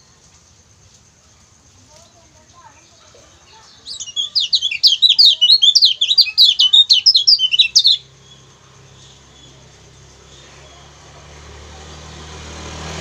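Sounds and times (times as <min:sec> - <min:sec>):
bird chirping sharply: 0:03.7 - 0:09.6.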